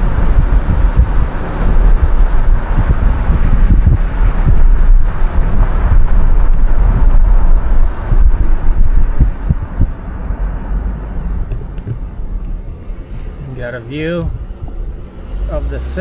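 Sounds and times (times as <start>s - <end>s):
wind buffeting microphone: 0.0s - 12.3s
moving car rumble: 0.0s - 16.0s.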